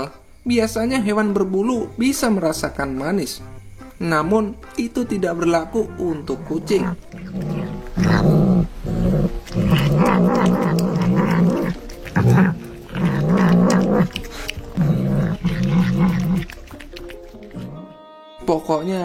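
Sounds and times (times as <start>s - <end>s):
cat growling: 6.1s - 18.0s.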